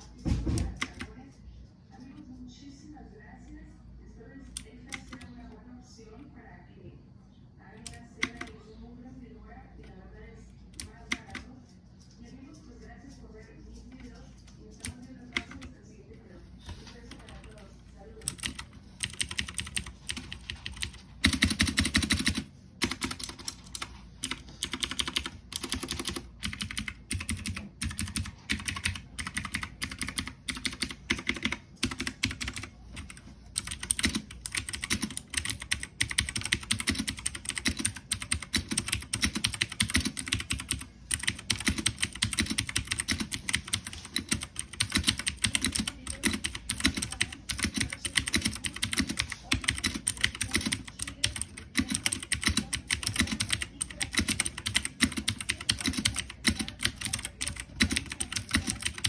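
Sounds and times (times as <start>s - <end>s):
mechanical keyboard clicks: 0.6s - 1.1s, 7.8s - 8.5s, 14.8s - 15.7s, 18.2s - 59.0s.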